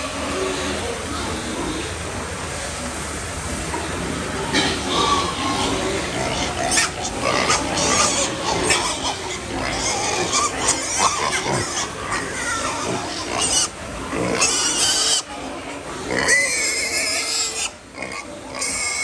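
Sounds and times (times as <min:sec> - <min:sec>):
piglets grunting and squealing: 0:04.6 - 0:19.0.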